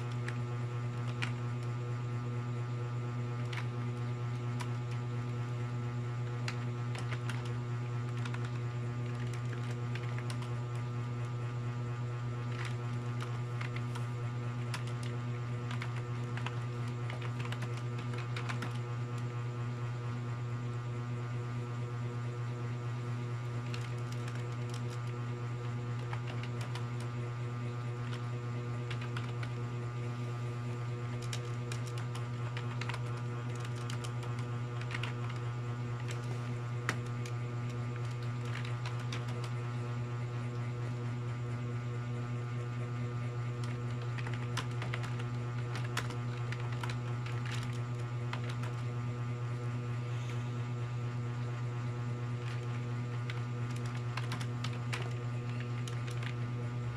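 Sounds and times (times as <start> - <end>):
loud electrical hum: 0.0 - 56.9
keyboard typing clicks: 6.5 - 10.8, 15.7 - 18.8, 28.8 - 29.6, 31.2 - 35.4, 38.0 - 39.6, 43.6 - 48.8, 52.4 - 56.4.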